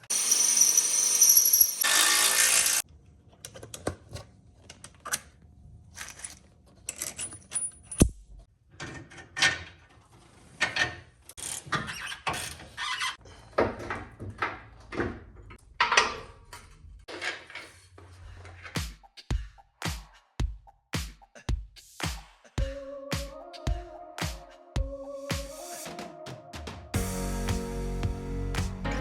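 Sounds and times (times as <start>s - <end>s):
power tool running: 0.0s - 2.8s
metal tools clinking and rattling: 6.0s - 8.1s.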